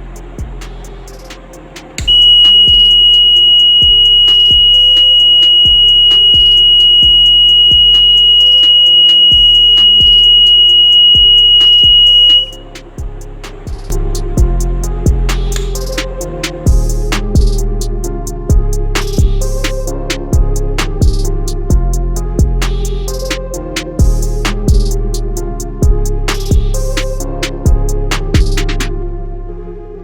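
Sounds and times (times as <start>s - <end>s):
background music with steady beat: 0.0s - 30.0s
high-pitched alarm buzzer tone: 2.1s - 12.7s.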